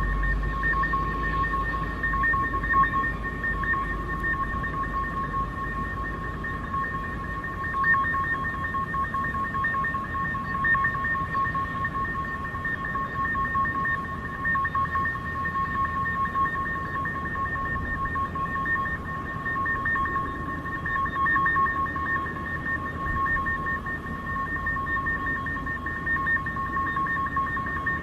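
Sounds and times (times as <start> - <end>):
high two-note drone: 0.0 - 2.0.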